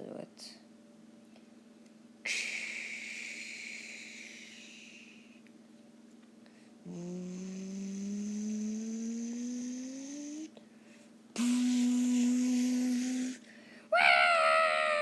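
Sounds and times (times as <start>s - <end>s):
person humming or straining: 6.8s - 10.5s, 11.4s - 15.0s.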